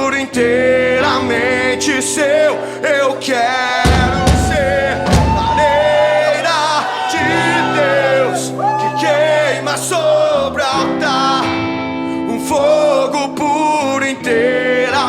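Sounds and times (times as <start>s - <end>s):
rock band playing: 3.8s - 8.1s.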